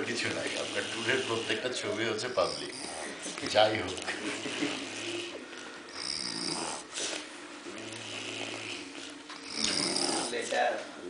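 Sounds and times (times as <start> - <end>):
person snoring: 0.3 - 1.7, 2.3 - 3.3, 4.2 - 7.1, 7.7 - 10.5.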